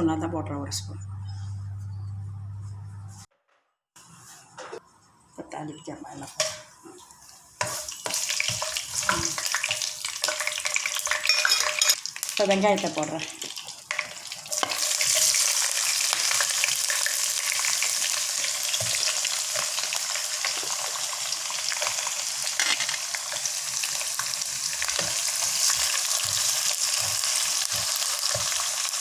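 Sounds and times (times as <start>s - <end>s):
onion sizzling in hot oil: 6.5s - 29.0s
spatula scraping and tapping: 7.6s - 12.0s, 25.0s - 28.9s.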